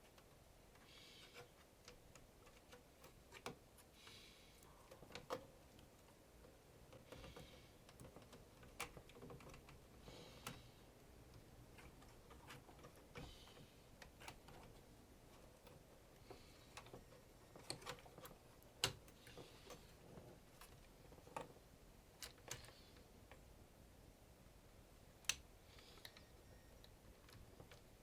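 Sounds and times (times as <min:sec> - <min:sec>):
small clicks and light taps: 0:00.0 - 0:23.5, 0:25.2 - 0:28.0.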